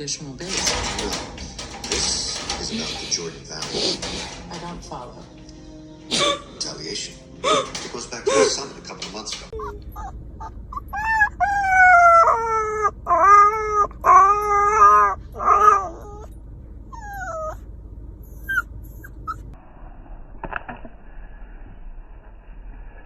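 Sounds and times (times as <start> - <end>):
dog whining: 9.4 - 19.6
dog howling: 9.5 - 16.3, 17.0 - 17.6.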